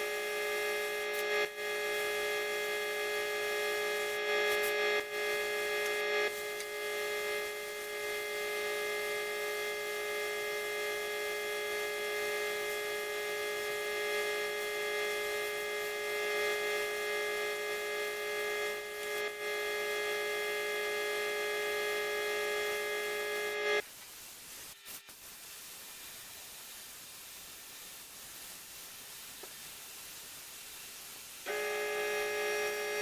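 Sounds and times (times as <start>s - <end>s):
electric motor humming: 0.0s - 20.2s, 31.5s - 33.0s.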